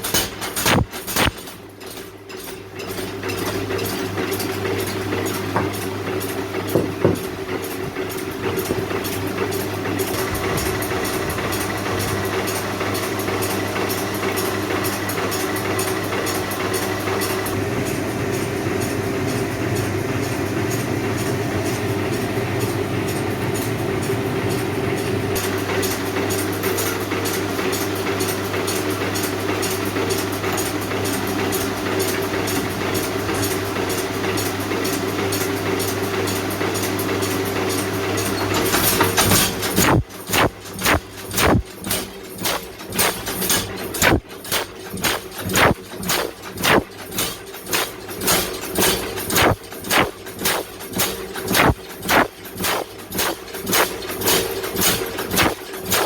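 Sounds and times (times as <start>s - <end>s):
machinery humming: 17.4s - 26.2s, 38.6s - 56.0s
fast dense clicking: 39.8s - 56.0s.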